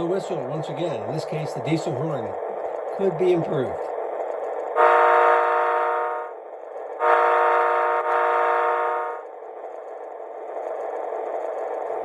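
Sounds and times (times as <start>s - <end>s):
steady background rumble: 0.0s - 12.0s
model train diesel horn blasts: 4.8s - 6.4s, 7.0s - 9.3s.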